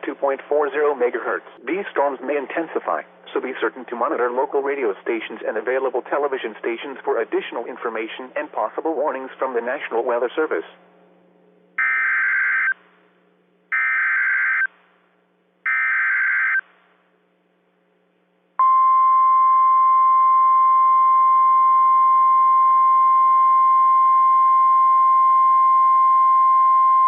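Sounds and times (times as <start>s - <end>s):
steady warning alarm tone: 11.8s - 12.8s, 13.7s - 14.7s, 15.7s - 16.6s.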